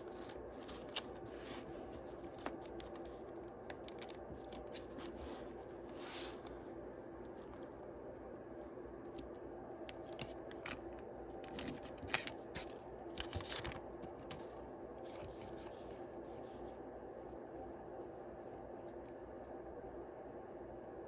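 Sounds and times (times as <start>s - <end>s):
packaging rustling: 10.2s - 14.5s.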